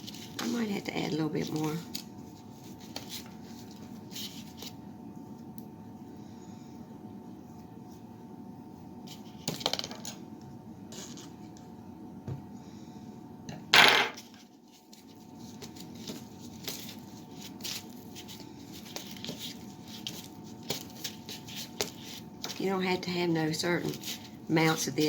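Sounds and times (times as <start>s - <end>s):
utensil scraping in mixing bowl: 14.4s - 25.0s.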